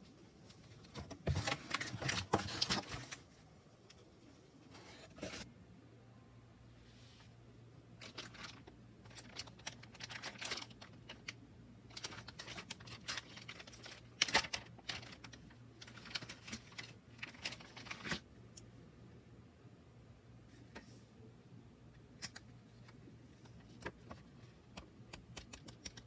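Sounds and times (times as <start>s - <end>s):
packaging rustling: 1.0s - 3.2s, 8.0s - 18.2s.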